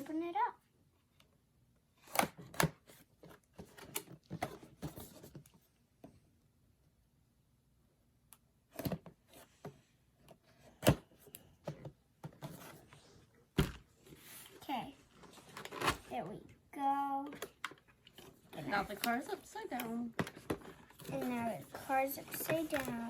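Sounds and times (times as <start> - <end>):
toy packaging being opened: 17.3 - 23.0.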